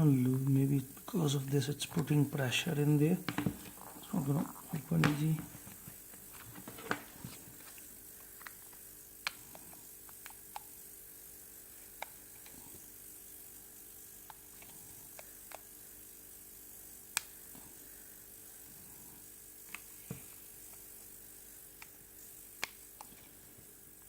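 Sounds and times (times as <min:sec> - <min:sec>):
faint hum: 0:00.0 - 0:24.0
clicks and taps of tools: 0:03.3 - 0:03.8.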